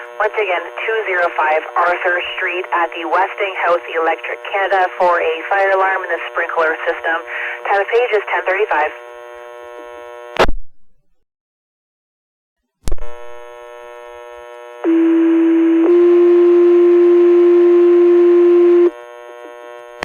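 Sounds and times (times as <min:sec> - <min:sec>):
radio hiss: 0:00.0 - 0:10.3.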